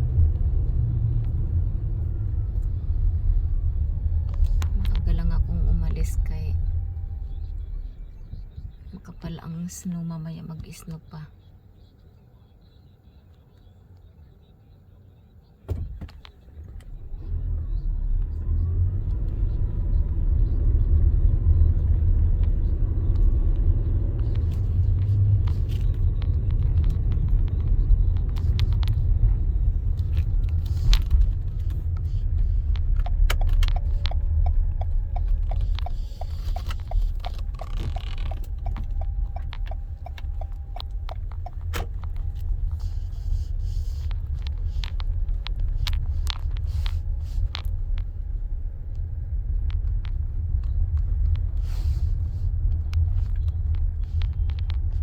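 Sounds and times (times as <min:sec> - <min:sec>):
car engine and road rumble: 0:00.0 - 0:55.0
steady regular ticking: 0:31.7 - 0:46.7.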